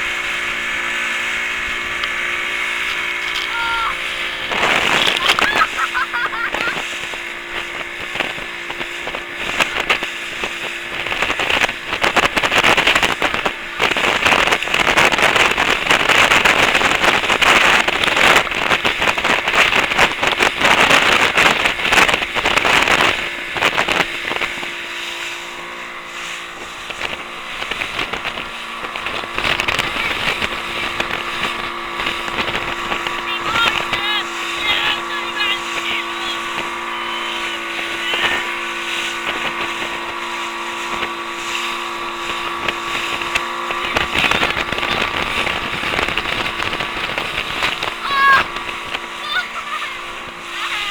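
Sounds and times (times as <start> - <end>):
motorboat engine humming: 0.0 - 50.9
water and wind rushing: 0.0 - 50.9.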